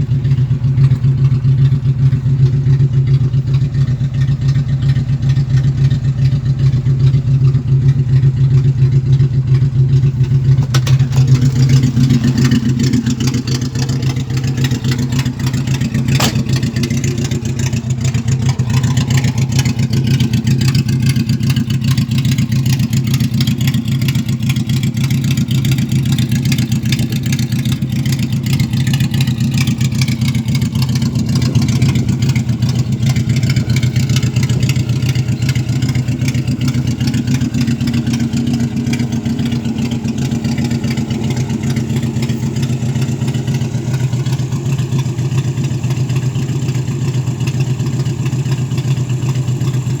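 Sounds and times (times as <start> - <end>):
car engine rumbling: 0.0 - 50.0.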